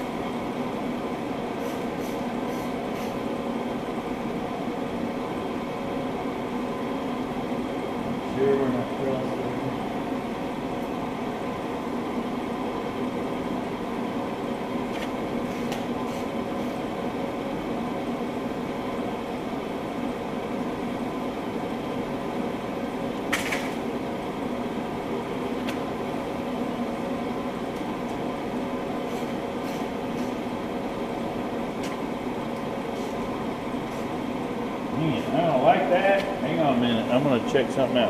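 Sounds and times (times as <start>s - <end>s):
steady mechanical hum: 0.0s - 38.0s.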